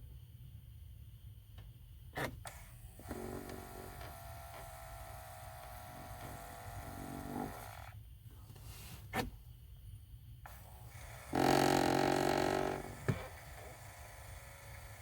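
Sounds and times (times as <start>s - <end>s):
small electric motor whirring: 2.5s - 8.0s, 10.5s - 15.0s.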